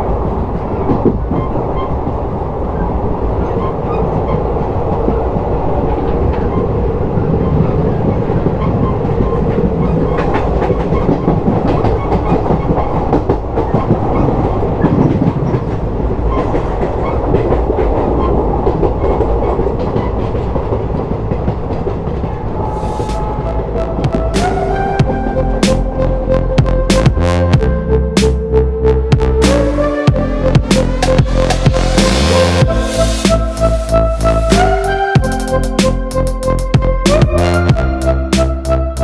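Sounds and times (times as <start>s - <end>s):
rail joints clacking: 0.0s - 25.9s
train wheels rumbling on rail: 0.0s - 27.7s, 29.2s - 39.0s.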